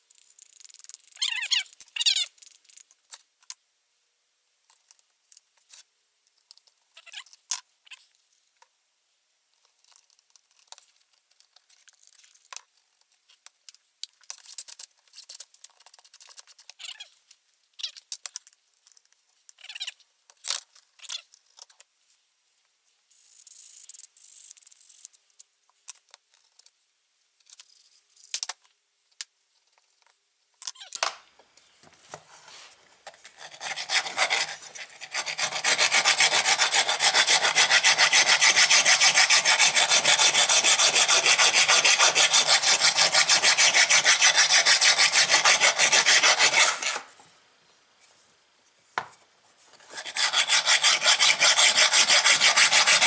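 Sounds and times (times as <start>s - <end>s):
scraping: 31.0s - 47.3s, 49.0s - 53.0s.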